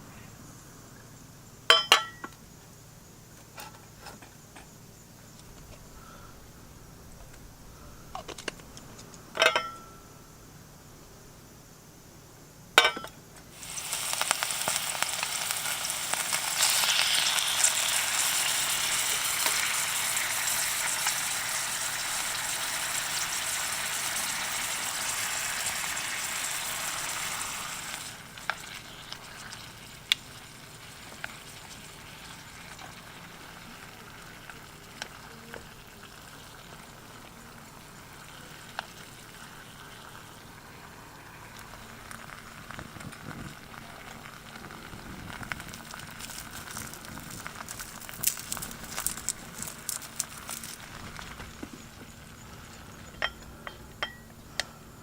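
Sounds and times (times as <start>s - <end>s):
meat sizzling in a pan: 13.5s - 53.0s.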